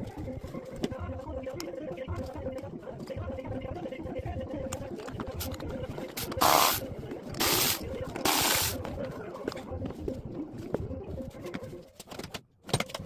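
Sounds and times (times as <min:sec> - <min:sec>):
hissing spray bursts: 0:06.2 - 0:06.8, 0:07.4 - 0:08.8.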